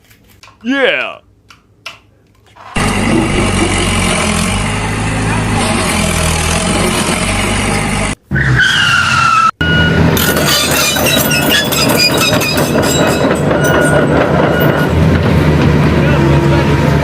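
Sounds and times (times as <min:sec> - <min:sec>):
short beeps: 0:09.6 - 0:10.0
clattering rattle: 0:10.2 - 0:14.9.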